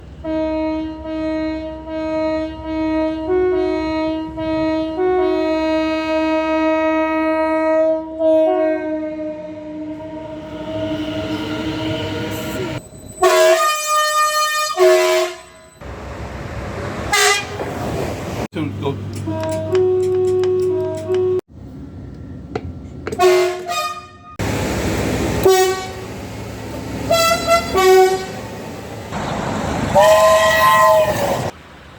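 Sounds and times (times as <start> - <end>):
two-tone train horn blast: 0.2 - 15.7, 17.1 - 17.6, 19.2 - 21.4, 23.2 - 24.4, 25.4 - 26.1, 27.1 - 28.4, 29.9 - 31.5
locomotive horn notes: 0.2 - 15.8, 17.1 - 17.6, 19.2 - 21.4, 23.2 - 24.4, 25.4 - 26.1, 27.0 - 28.4, 29.2 - 31.5
train rushing past: 9.1 - 13.7, 15.8 - 19.9, 24.3 - 31.9.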